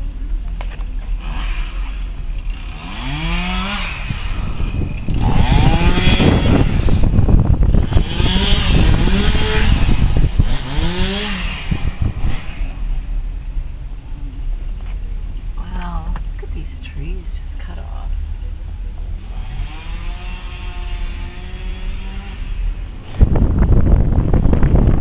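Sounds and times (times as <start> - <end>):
chainsaw engine revving: 1.2 - 13.0, 19.2 - 23.4.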